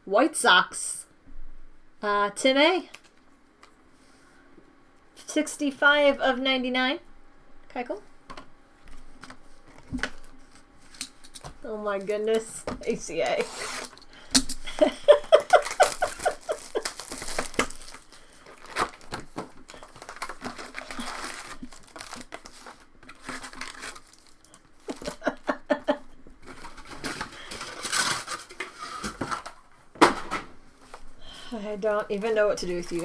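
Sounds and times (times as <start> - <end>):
card wrappers crinkling and tearing: 8.9 - 29.7, 30.9 - 33.0.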